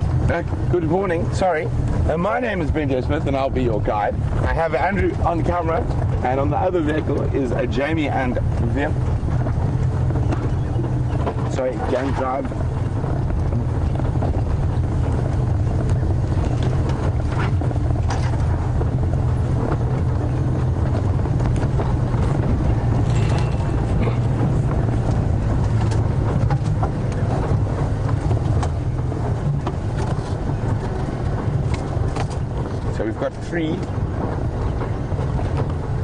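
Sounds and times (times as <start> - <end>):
vehicle engine running off-road: 0.0 - 36.0.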